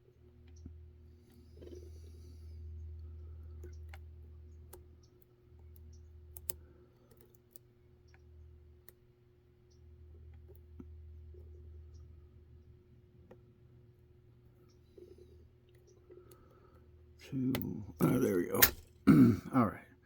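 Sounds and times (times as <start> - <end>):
low steady hum: 0.0 - 20.0
lock picks clicking: 17.5 - 19.0.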